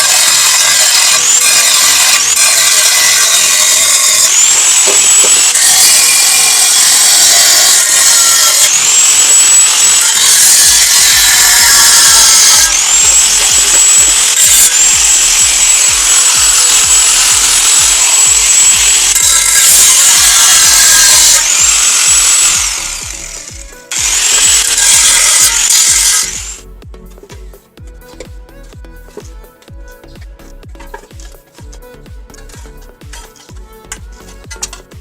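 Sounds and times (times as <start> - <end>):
power tool cutting sheet steel: 0.0 - 26.6.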